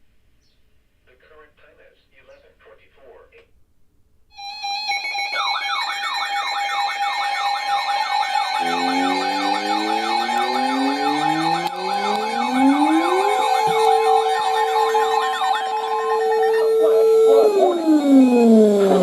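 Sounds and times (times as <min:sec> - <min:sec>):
warbling emergency alert siren: 0:04.4 - 0:19.0
rising wind-up siren tone: 0:06.5 - 0:19.0.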